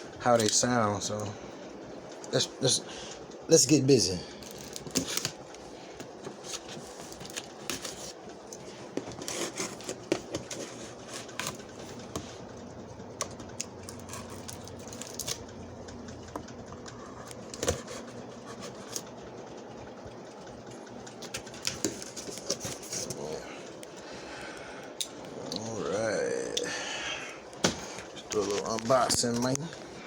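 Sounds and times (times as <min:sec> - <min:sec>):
cardboard box being handled: 0:08.8 - 0:12.3.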